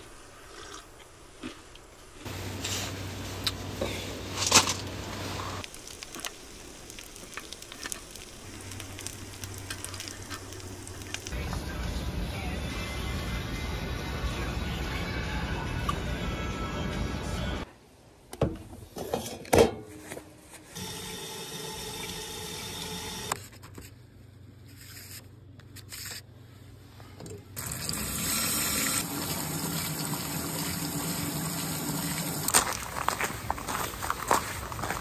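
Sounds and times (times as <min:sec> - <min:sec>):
water running: 0:27.6 - 0:33.0.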